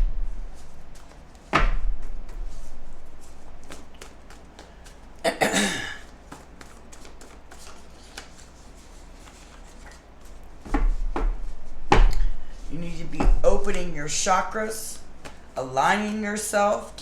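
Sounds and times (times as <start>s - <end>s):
cards being shuffled: 2.3s - 5.2s, 6.0s - 11.0s.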